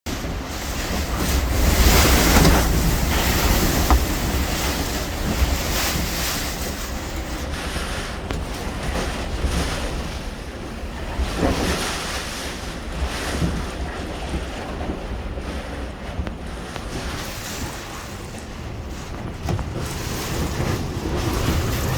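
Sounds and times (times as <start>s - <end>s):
strong wind buffeting microphone: 0.1s - 21.9s
brief knocks: 2.1s - 4.4s.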